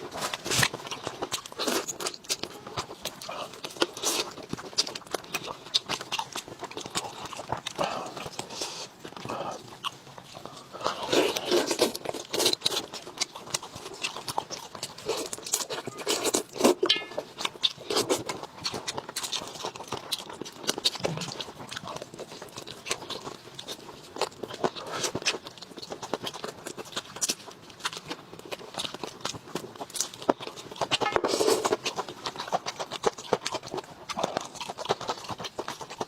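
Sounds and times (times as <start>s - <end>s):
person chewing food: 0.0s - 36.0s.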